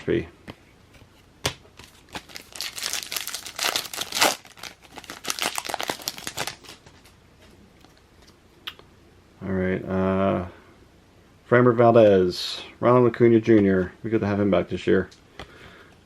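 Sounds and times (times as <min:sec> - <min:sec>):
plastic wrapper crinkling and tearing: 0:01.8 - 0:07.2.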